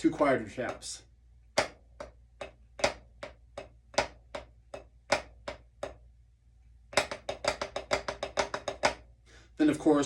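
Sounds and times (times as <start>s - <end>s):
drumsticks playing accented taps: 0.0s - 1.0s, 1.6s - 6.0s.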